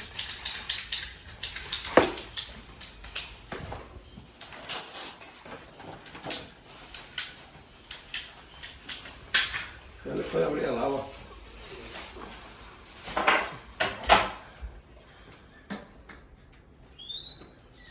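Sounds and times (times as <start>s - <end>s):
hard objects clicking and clinking: 0.0s - 4.9s.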